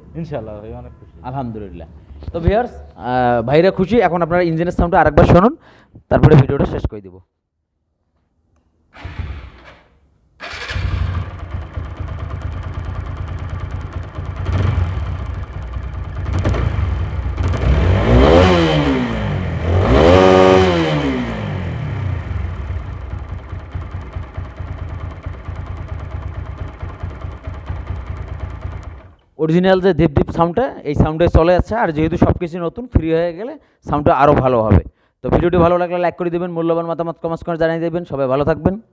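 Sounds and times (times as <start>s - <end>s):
motorcycle engine starting and idling: 8.9s - 29.4s
motorcycle engine revving: 9.0s - 29.2s.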